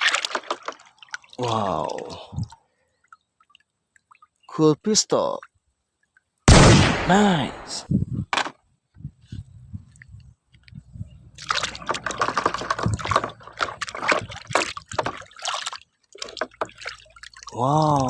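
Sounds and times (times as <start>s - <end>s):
water sloshing and trickling: 0.0s - 6.4s, 9.2s - 18.0s
plastic clicks and knocks: 11.8s - 14.3s.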